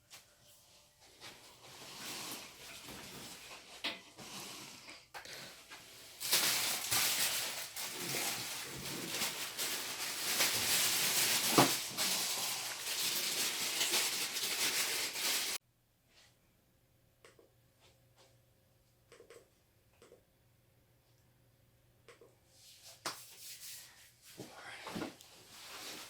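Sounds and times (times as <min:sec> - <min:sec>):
packaging rustling and scraping: 0:01.2 - 0:04.2, 0:05.7 - 0:15.6, 0:25.4 - 0:26.0
packaging cracking: 0:06.2 - 0:15.6.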